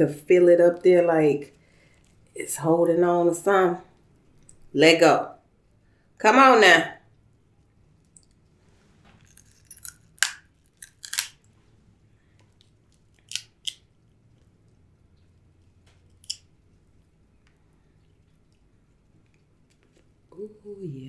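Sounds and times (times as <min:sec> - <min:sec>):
crab shells cracking: 0:09.3 - 0:11.4, 0:12.9 - 0:13.9, 0:16.2 - 0:16.5.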